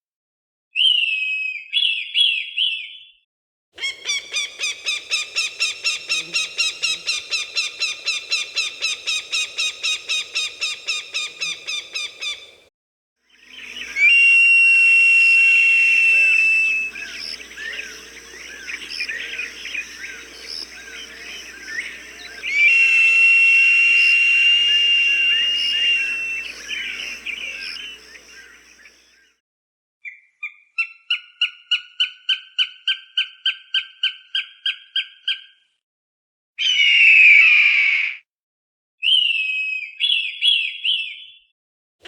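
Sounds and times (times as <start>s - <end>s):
hawk sharp repeated calls: 3.8s - 12.6s, 15.5s - 29.0s
small birds chirping: 3.8s - 12.6s, 13.3s - 14.4s, 15.5s - 29.2s
hawk screaming: 13.5s - 28.8s.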